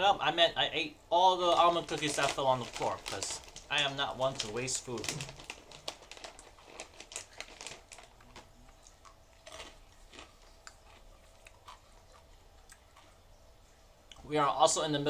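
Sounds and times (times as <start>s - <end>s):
wrapper rustling: 1.4s - 11.8s
crisp food crunching: 1.4s - 13.2s.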